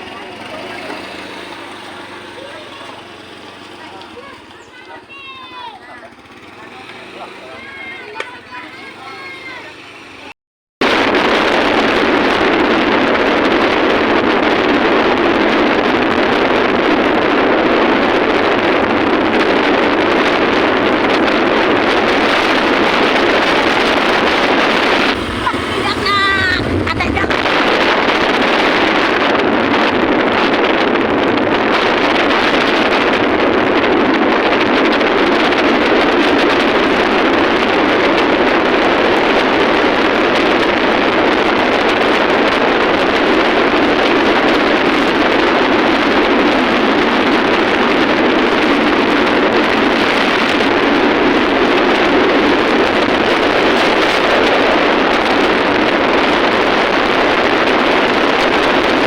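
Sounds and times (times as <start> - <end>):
moving vehicle rushing noise: 0.0 - 59.0
wind on microphone: 0.0 - 59.0.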